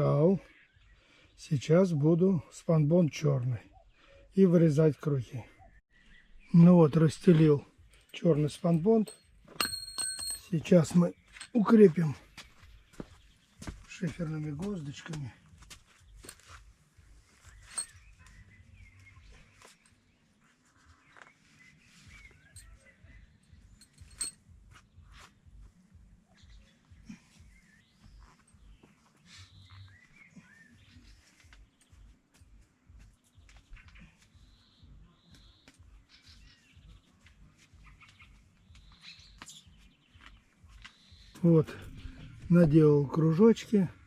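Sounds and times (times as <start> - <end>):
faint birds chirping: 0.0 - 44.0.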